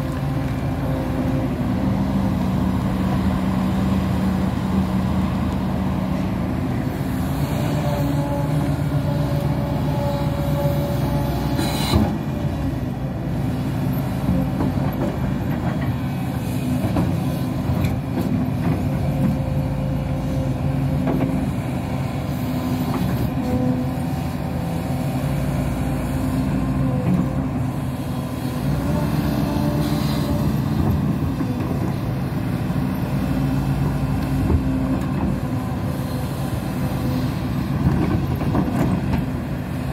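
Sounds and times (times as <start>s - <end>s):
excavator engine and hydraulics: 0.0s - 39.9s.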